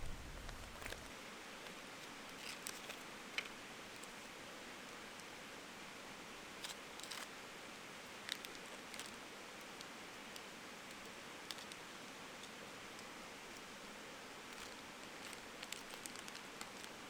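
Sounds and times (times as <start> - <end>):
light clicks and rustles: 0.4 - 4.4.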